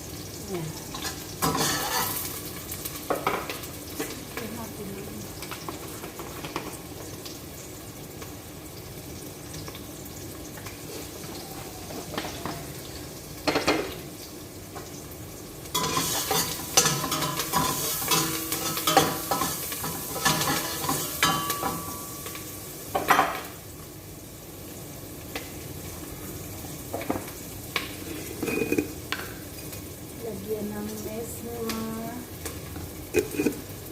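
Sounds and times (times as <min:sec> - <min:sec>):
food sizzling in hot oil: 0:00.0 - 0:33.9
metal utensil scraping pot: 0:01.0 - 0:02.3, 0:15.8 - 0:22.0, 0:28.1 - 0:29.0, 0:33.1 - 0:33.6.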